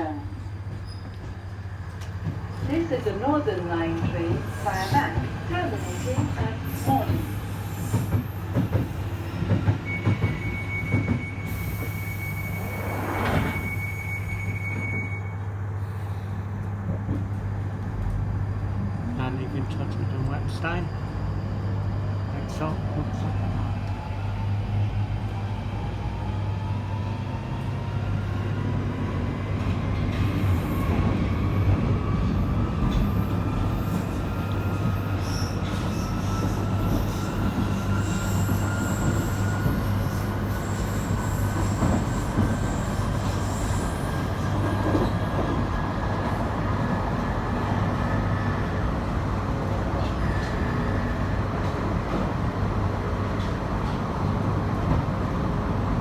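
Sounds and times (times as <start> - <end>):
thin high squeal: 10.5 - 15.3.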